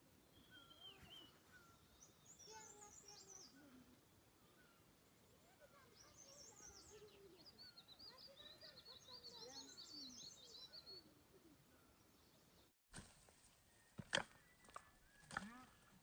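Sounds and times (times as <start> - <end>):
small birds chirping and trilling: 0.0 - 12.7.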